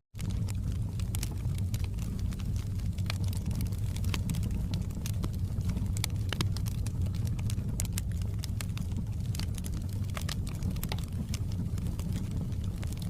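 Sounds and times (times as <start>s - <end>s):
flames rumbling: 0.2s - 13.0s
wood fire crackling: 0.2s - 13.0s.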